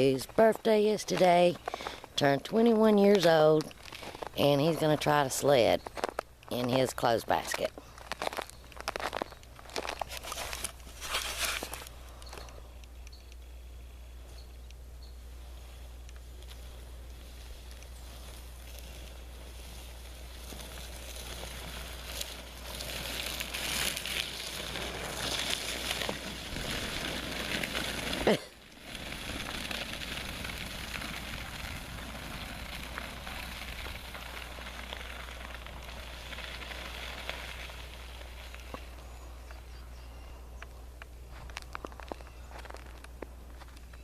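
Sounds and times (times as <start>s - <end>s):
crunching over icy snow: 0.0s - 12.6s, 15.4s - 40.1s, 41.3s - 44.0s
small ticks: 11.8s - 13.5s.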